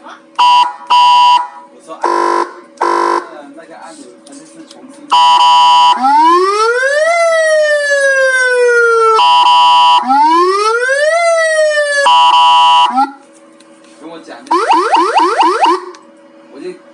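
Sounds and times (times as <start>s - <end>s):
electronic siren wail: 0.4s - 3.2s, 5.1s - 13.2s, 14.5s - 16.0s
siren horn blast: 0.4s - 3.4s, 5.1s - 13.2s, 14.5s - 16.0s.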